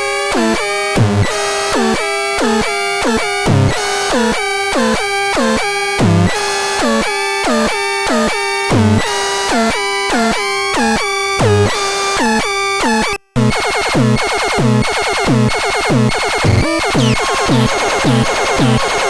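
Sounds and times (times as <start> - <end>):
synthesizer notes sliding down: 13.4 - 19.0.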